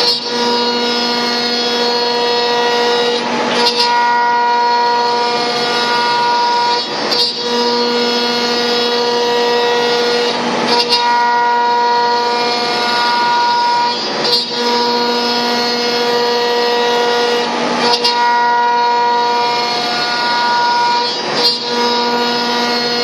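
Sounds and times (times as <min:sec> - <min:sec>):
router spindle whining: 0:00.0 - 0:23.0.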